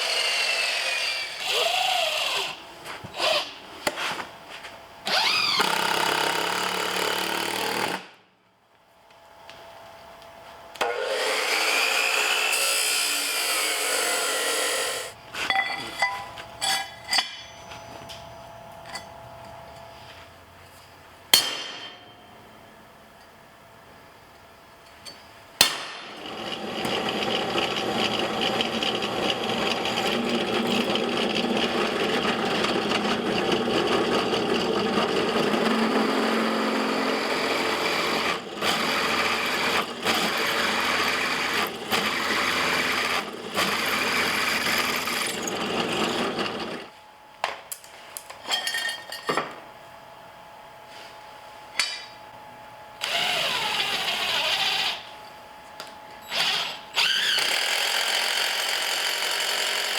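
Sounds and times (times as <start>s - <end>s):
power tool running: 0.0s - 3.6s, 5.0s - 8.2s, 10.7s - 15.2s, 25.9s - 46.9s, 53.0s - 55.1s, 56.3s - 59.9s.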